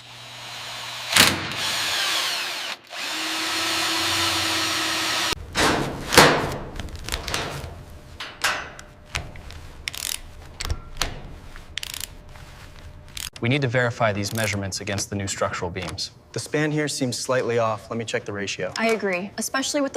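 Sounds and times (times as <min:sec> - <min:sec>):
power drill whining: 0:00.0 - 0:05.4.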